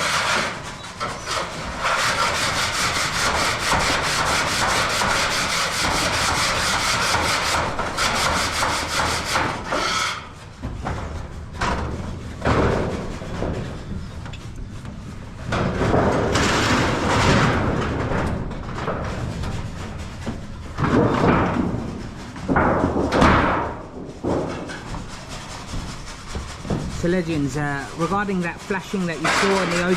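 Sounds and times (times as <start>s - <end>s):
rhythmic rubbing strokes: 0.0s - 15.6s, 21.5s - 29.9s.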